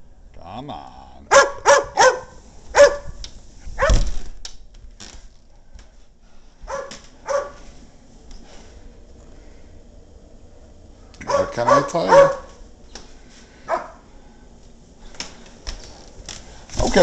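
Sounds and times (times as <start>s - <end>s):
dog barking: 1.3s - 3.2s, 3.8s - 4.0s, 6.6s - 7.6s, 11.2s - 12.6s, 13.7s - 14.0s.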